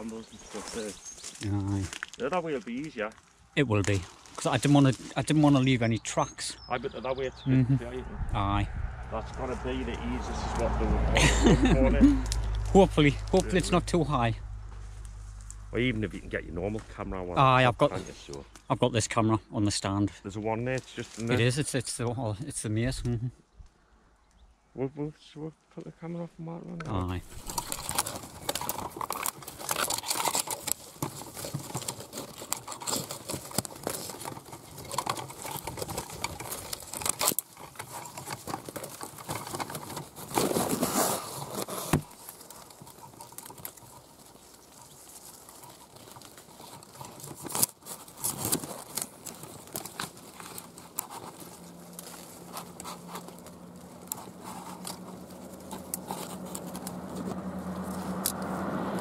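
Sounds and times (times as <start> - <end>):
leaves and twigs rustling: 0.0 - 7.4, 8.1 - 19.4, 20.3 - 22.8, 26.9 - 59.0
low steady hum: 5.6 - 20.5.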